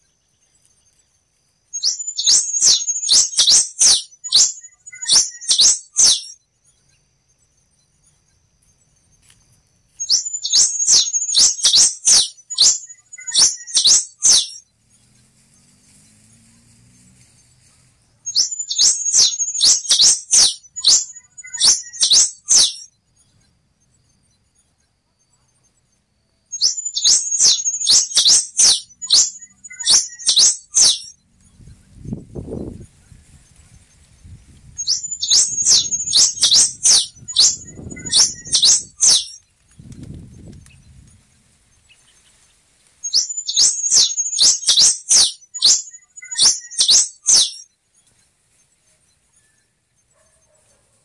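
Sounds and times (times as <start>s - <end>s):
finch singing high notes: 34.8s - 39.4s.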